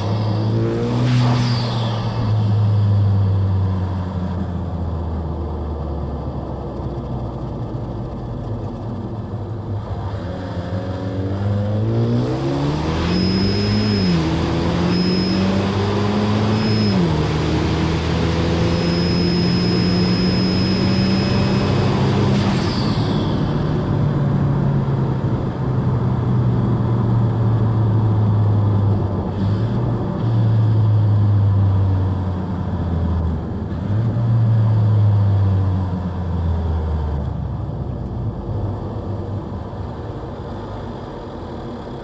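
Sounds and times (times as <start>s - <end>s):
car engine accelerating: 0.0s - 39.9s
turbo whistle: 12.5s - 23.7s.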